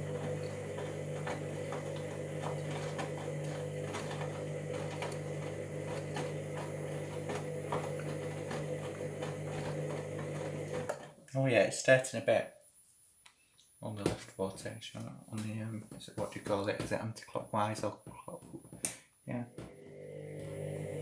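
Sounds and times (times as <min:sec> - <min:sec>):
washing machine motor hum: 0:00.0 - 0:11.2, 0:19.5 - 0:21.0.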